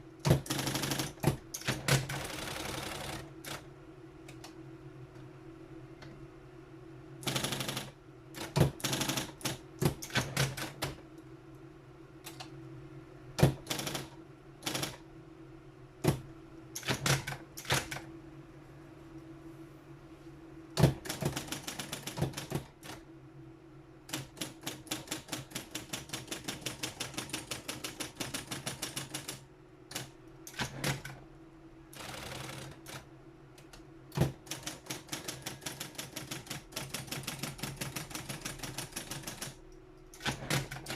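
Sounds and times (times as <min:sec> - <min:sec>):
typewriter keys striking: 0:00.2 - 0:03.6, 0:07.2 - 0:11.0, 0:16.8 - 0:18.0, 0:20.8 - 0:23.0, 0:24.1 - 0:31.2, 0:34.2 - 0:40.9
typewriter motor hum: 0:00.2 - 0:03.7, 0:07.2 - 0:11.0, 0:13.4 - 0:15.0, 0:16.8 - 0:18.1, 0:20.8 - 0:23.0, 0:24.1 - 0:31.2, 0:31.9 - 0:33.1, 0:34.1 - 0:40.9.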